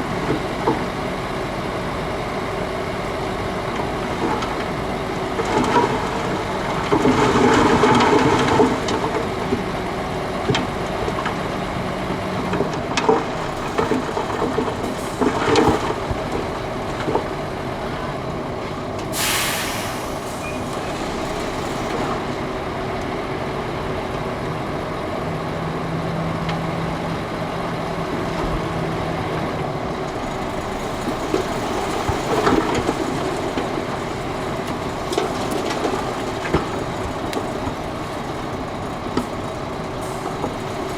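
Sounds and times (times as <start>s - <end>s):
bulldozer diesel engine running: 0.0s - 40.9s
steel tracks clanking and squealing: 13.2s - 22.4s
short burst of hiss: 19.1s - 20.6s.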